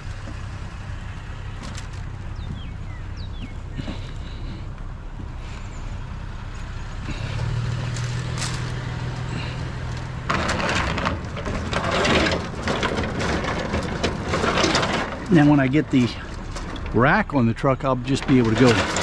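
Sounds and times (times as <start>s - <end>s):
low engine hum: 0.0s - 19.0s
scrap metal wire clattering: 7.1s - 17.0s, 18.2s - 19.0s.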